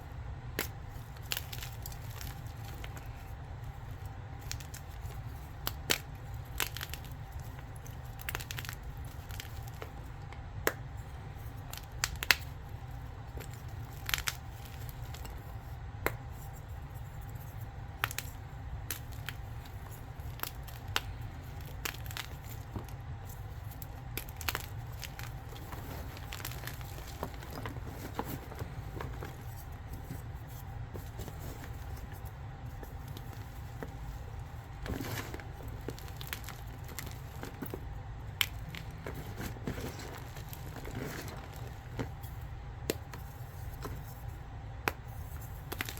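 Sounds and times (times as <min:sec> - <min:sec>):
chalk crunching by hand: 0:17.0 - 0:42.2.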